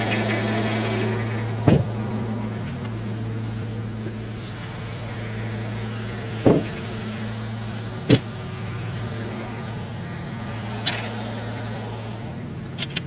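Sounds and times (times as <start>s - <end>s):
tractor engine running: 0.0s - 13.0s
sharp knock: 6.5s - 6.8s.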